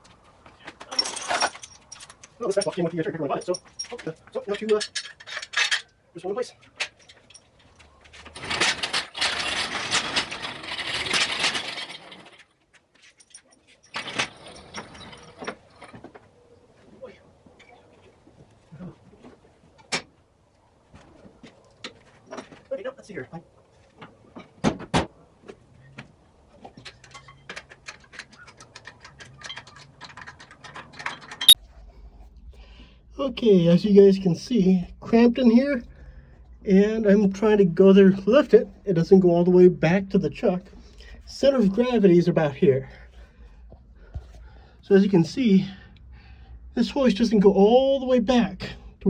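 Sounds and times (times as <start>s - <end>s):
metal chains and hooks clinking: 0.8s - 5.9s.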